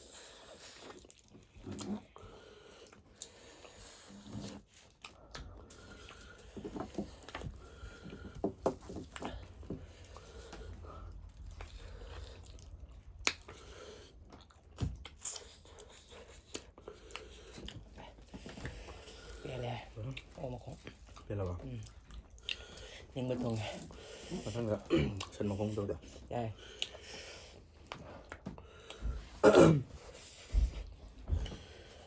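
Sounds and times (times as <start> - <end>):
chewing and biting: 0.0 - 8.0, 9.2 - 19.4.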